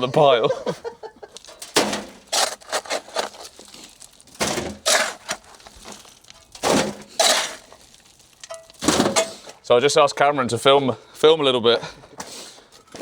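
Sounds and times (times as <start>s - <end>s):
concrete chunks clattering: 0.0s - 10.2s
shovel scraping through rubble: 1.4s - 9.6s.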